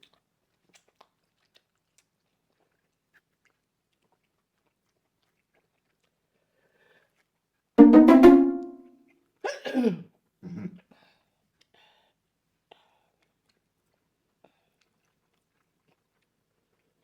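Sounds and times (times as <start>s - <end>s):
chewing clicks: 0.0s - 6.2s
person sneezing: 9.5s - 10.0s.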